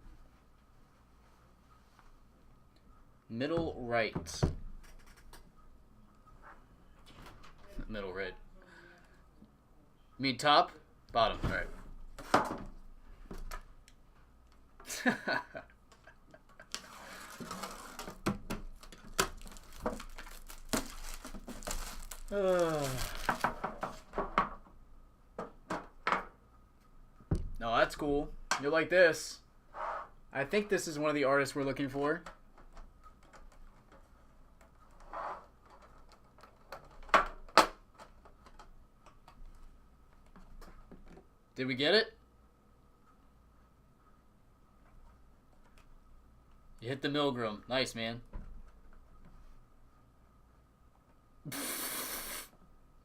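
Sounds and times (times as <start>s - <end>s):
wrapper and card rustling: 16.7s - 24.1s.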